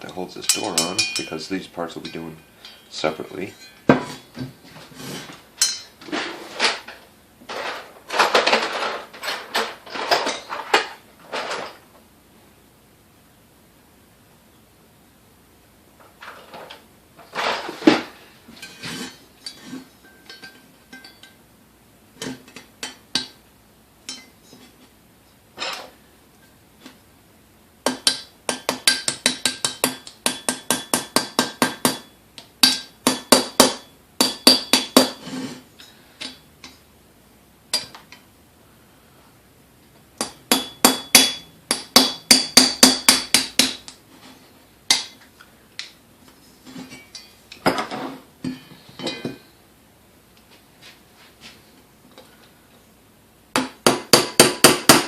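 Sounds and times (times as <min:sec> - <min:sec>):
hammer tapping on metal punch: 0:40.2 - 0:43.9.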